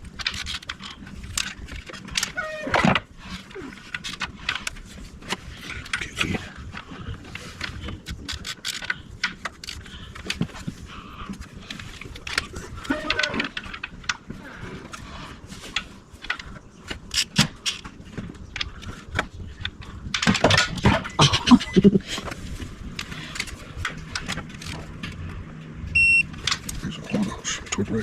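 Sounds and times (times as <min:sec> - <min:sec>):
hand tools and metal parts clanking: 0:00.0 - 0:25.4
short high beep: 0:26.0 - 0:26.2.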